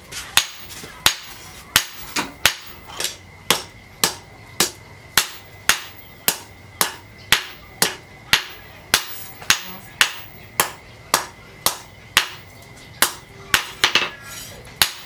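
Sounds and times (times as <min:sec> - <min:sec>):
hammer striking steel on anvil: 0:00.4 - 0:14.2.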